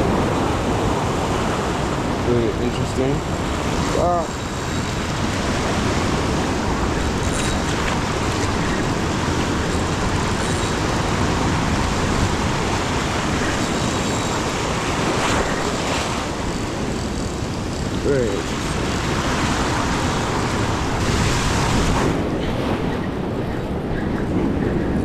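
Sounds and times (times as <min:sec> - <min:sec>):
ocean surf rushing: 0:00.0 - 0:25.0
wind on microphone: 0:00.0 - 0:25.0.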